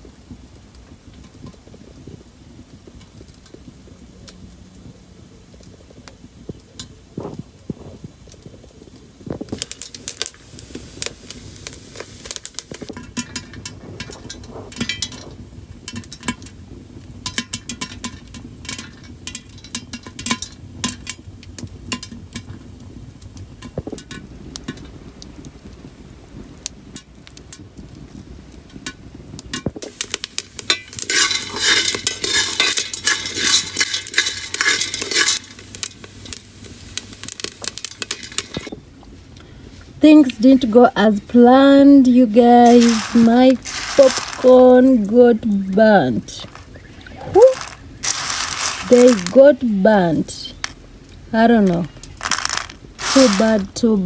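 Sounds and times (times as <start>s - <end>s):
popcorn popping in a saucepan: 0.0s - 5.0s, 5.6s - 54.0s.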